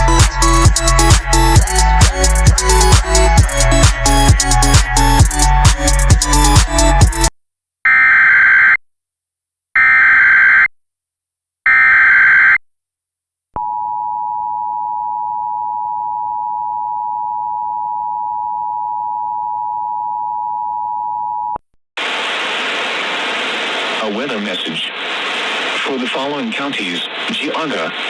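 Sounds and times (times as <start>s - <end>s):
radio hiss: 22.0s - 28.0s.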